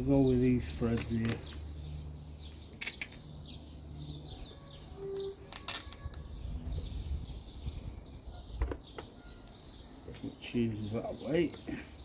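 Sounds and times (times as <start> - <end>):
songbird chirping: 0.0 - 12.0
clicks from handling small parts: 0.9 - 1.7, 2.8 - 3.3.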